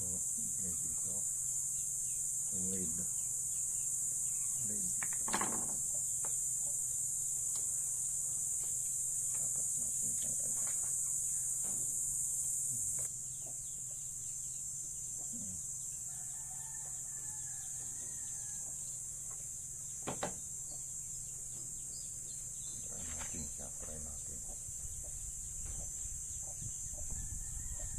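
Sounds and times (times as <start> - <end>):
crickets chirping: 0.0 - 27.9
faint rooster crowing: 16.0 - 19.0, 26.6 - 27.9.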